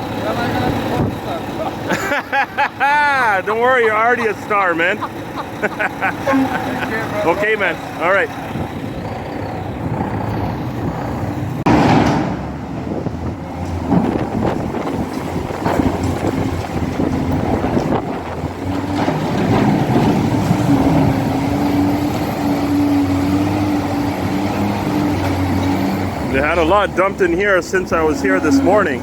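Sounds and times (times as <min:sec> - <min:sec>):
diesel engine running: 0:00.0 - 0:29.0
loud thump: 0:11.7 - 0:12.7.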